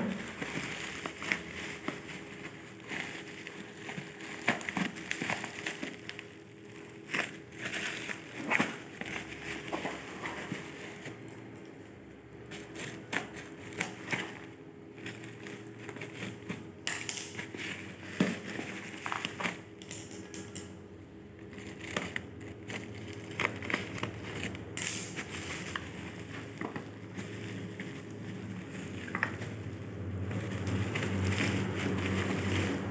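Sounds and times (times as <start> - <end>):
plastic wrapping crinkling: 0.0 - 32.9.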